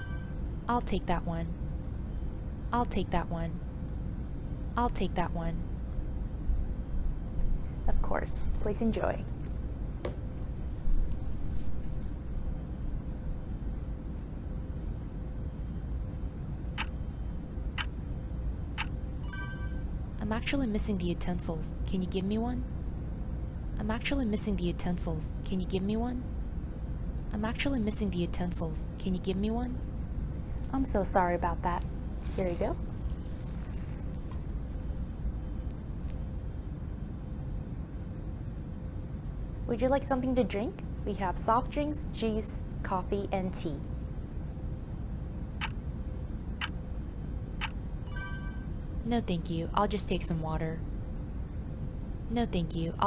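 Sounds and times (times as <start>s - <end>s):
faint steady hum: 0.0s - 53.0s
airliner cabin rumble: 29.8s - 36.3s.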